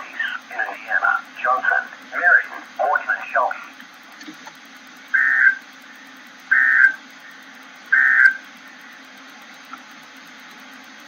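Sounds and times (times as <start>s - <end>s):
harsh electronic data tones: 0.0s - 3.8s, 4.7s - 9.2s
faint hum: 0.0s - 11.0s.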